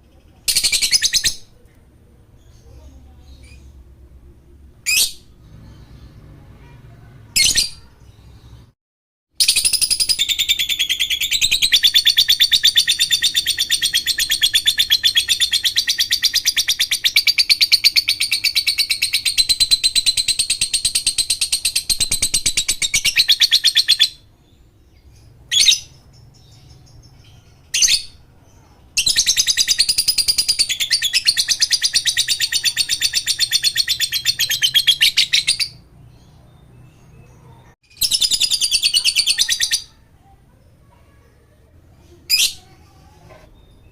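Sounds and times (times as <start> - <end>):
lovebird chattering trill: 0.4 - 1.5, 9.4 - 24.2, 29.0 - 35.8, 37.9 - 40.0.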